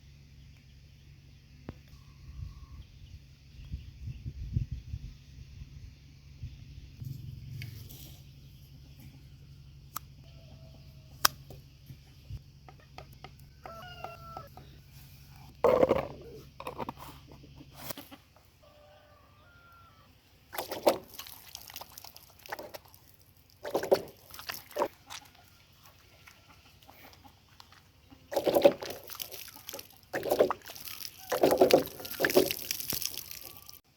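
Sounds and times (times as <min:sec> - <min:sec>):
chicken clucking: 0:12.7 - 0:14.8, 0:15.7 - 0:19.8, 0:25.0 - 0:28.5.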